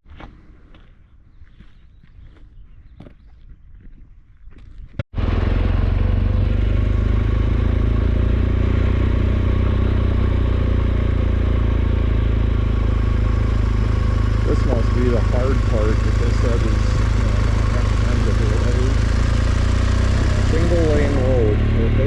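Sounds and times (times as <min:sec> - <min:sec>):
wind and road noise: 0:00.0 - 0:22.0
motorcycle engine running: 0:05.2 - 0:22.0.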